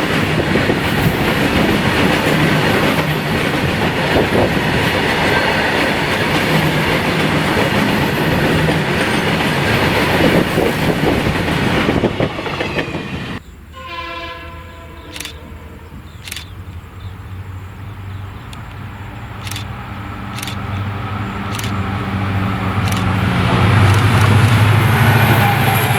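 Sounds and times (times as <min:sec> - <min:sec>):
train passing at speed: 0:00.0 - 0:13.8, 0:14.5 - 0:25.9
coaches rattling over rail joints: 0:21.4 - 0:25.9.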